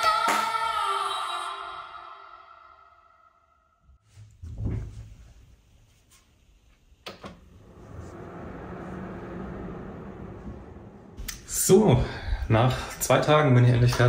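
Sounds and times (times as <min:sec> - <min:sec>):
low hum: 0:07.3 - 0:12.9.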